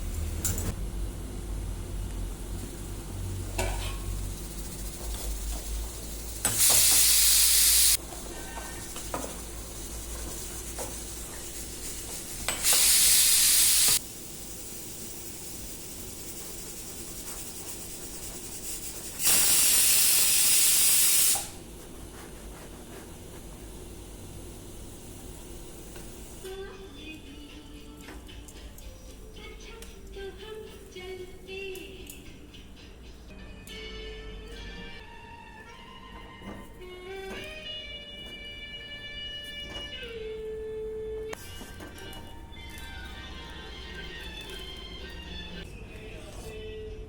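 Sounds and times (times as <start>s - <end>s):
loud hissing bursts: 6.0s - 8.0s, 9.6s - 17.0s, 17.6s - 21.6s.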